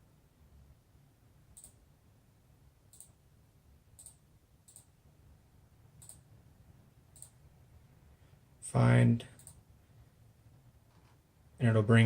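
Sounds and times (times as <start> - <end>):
low steady hum: 0.0 - 12.0
computer mouse clicks: 1.6 - 1.8, 2.9 - 3.2, 4.0 - 4.9, 6.0 - 6.3, 7.1 - 7.4, 9.4 - 9.6.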